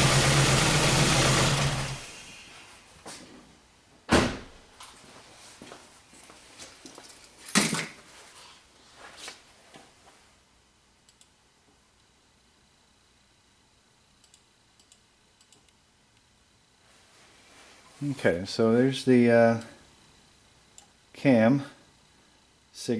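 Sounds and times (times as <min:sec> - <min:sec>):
faint clicks: 0:11.1 - 0:11.3, 0:14.2 - 0:16.3.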